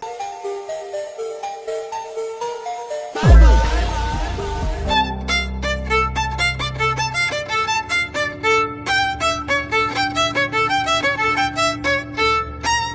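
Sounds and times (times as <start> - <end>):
steady low bass note: 3.2 - 6.3
bouncy violin melody: 4.9 - 12.9.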